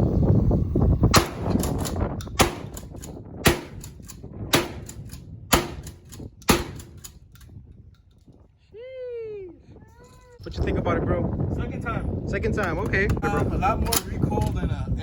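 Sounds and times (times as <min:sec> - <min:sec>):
sharp gunshots: 0:01.1 - 0:07.1.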